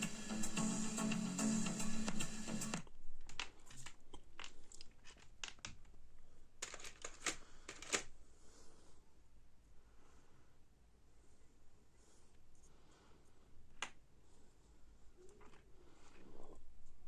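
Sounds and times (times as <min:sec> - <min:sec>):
speaker clicks and crackles: 0:02.0 - 0:06.0.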